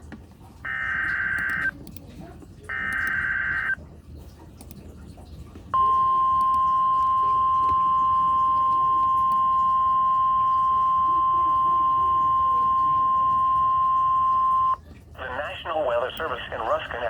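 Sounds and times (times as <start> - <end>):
steady alarm tone: 0.7 - 1.7, 2.7 - 3.8, 5.8 - 14.8.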